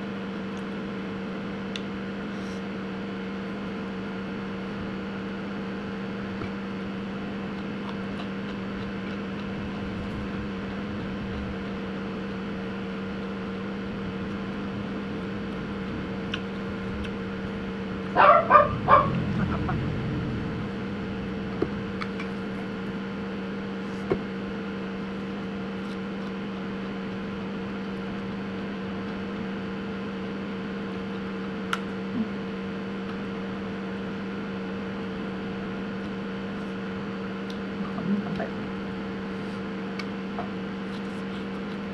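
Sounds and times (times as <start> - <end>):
electrical hum: 0.0 - 41.9
dog barking: 18.1 - 19.2.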